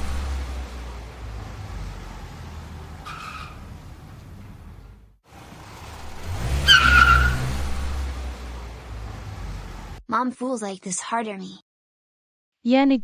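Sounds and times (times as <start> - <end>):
low engine rumble: 0.0 - 10.0
tyre squeal: 3.0 - 3.8, 6.5 - 7.5.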